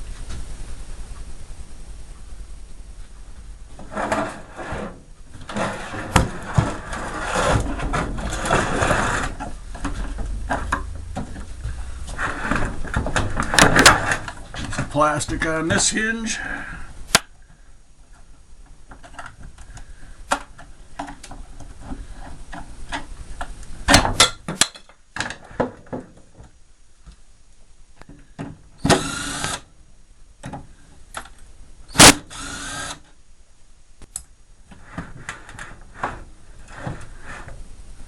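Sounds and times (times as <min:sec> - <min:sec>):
cordless power drill spinning: 0:28.8 - 0:29.7, 0:31.9 - 0:33.1.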